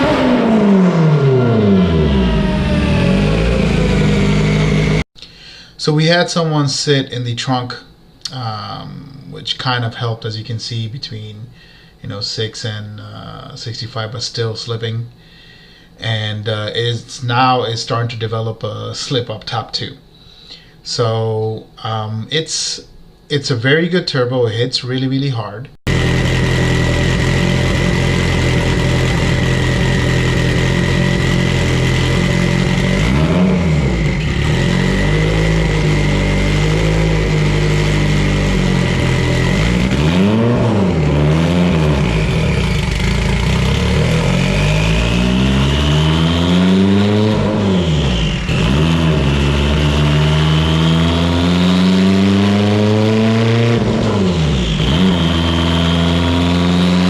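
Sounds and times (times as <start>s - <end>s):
turbocharged car engine revving: 0.0s - 5.1s, 25.9s - 57.0s.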